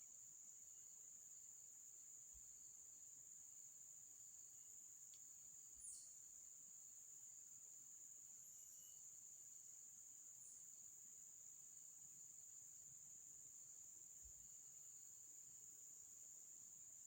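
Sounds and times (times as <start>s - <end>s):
high-pitched insect chirring: 5.7s - 6.2s, 8.4s - 9.2s, 10.4s - 10.8s.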